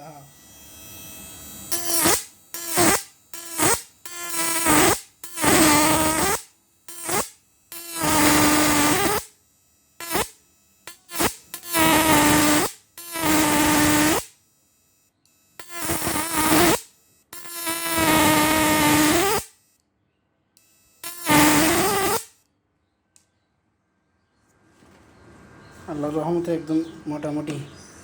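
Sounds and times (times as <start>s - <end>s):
harsh electrical buzz: 0.0s - 19.8s, 20.6s - 22.5s.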